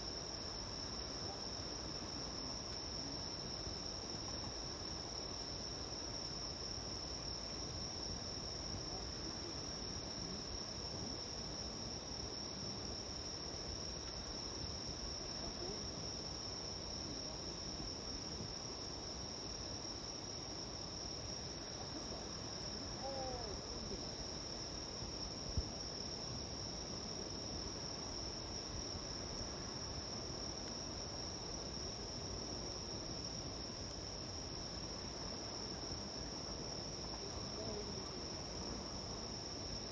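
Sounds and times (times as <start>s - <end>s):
crickets trilling: 0.0s - 39.9s
campfire crackling: 26.6s - 39.8s.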